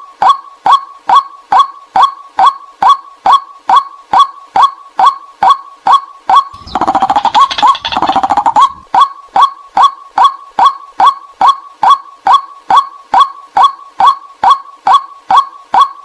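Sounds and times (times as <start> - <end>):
waterhen calling: 6.6 - 9.0.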